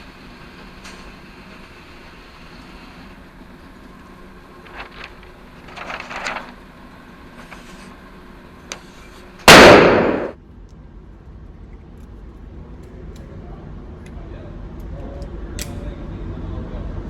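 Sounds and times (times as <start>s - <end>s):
sharp click: 15.6s - 15.8s.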